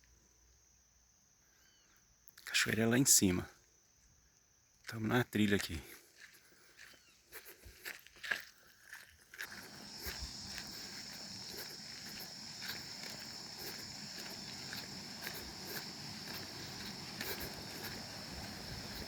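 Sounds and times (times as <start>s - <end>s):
insects droning: 0.0s - 19.0s
footsteps on a trail: 4.9s - 19.0s.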